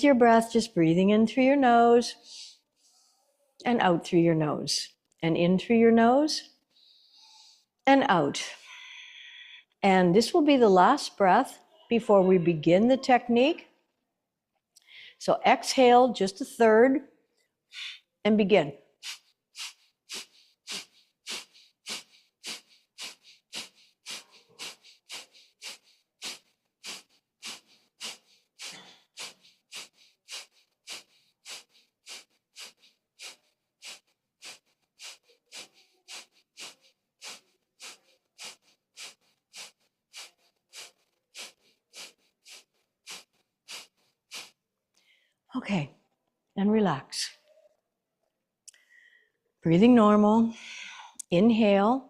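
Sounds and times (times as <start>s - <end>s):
forceful nasal exhalations: 6.7s - 7.7s, 17.7s - 45.4s.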